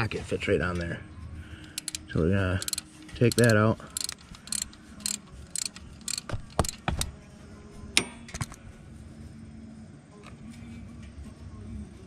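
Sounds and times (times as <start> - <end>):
ratchet wrench clicking: 1.6 - 7.1.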